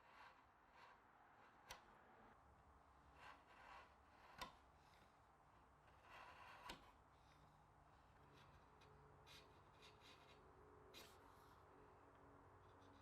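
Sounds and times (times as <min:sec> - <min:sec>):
soft scratching: 0:00.0 - 0:01.6, 0:03.1 - 0:05.2, 0:05.8 - 0:11.7, 0:12.6 - 0:13.0.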